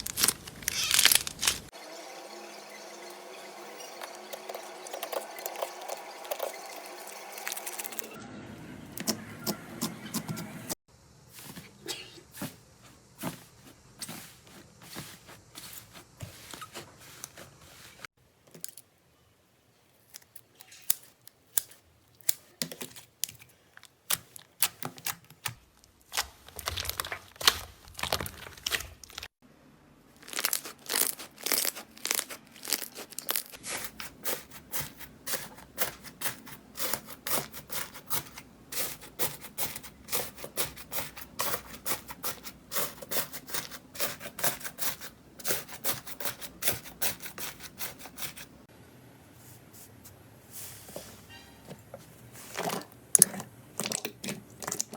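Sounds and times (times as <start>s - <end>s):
slime crackling and popping: 0.0s - 1.7s, 30.2s - 33.6s.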